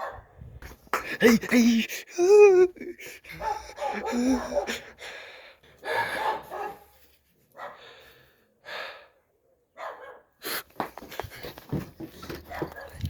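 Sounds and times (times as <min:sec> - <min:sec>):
person breathing hard in gasps: 0:00.9 - 0:02.1, 0:02.8 - 0:06.4, 0:07.8 - 0:09.2
person whimpering: 0:00.9 - 0:05.2.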